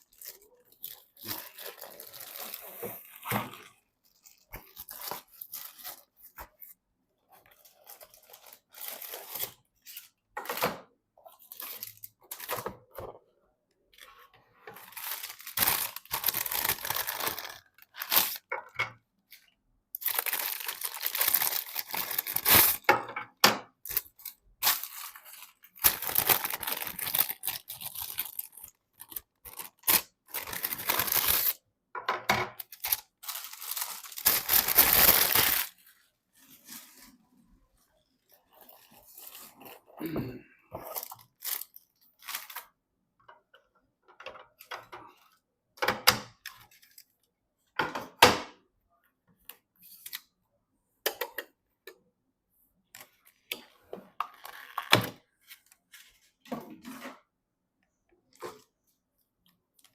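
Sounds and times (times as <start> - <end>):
packaging tearing and crinkling: 0.0 - 3.2, 14.8 - 18.5, 20.0 - 22.9, 23.9 - 31.6, 32.6 - 35.8.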